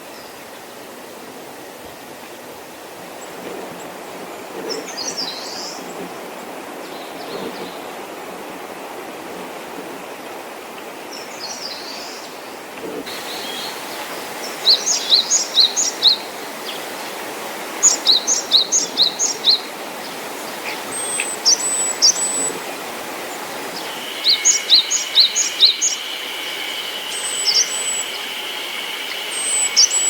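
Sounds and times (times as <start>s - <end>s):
stream rushing: 0.0s - 30.0s
songbirds chirping: 11.0s - 30.0s.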